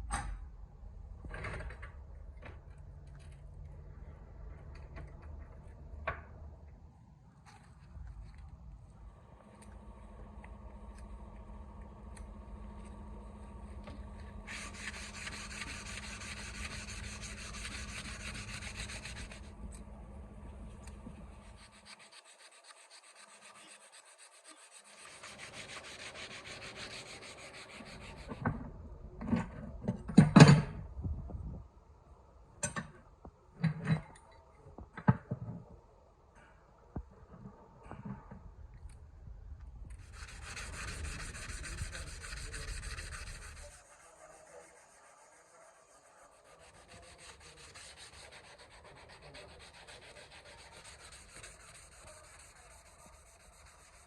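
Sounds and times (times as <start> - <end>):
sanding machine humming: 9.3 - 28.4, 40.0 - 54.0
abrasive rubbing on workpiece: 11.2 - 28.6, 39.9 - 54.0.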